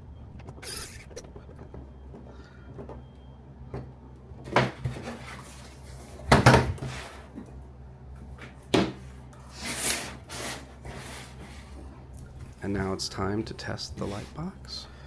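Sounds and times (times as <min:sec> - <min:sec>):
plastic part scraping slide: 0:09.5 - 0:11.8.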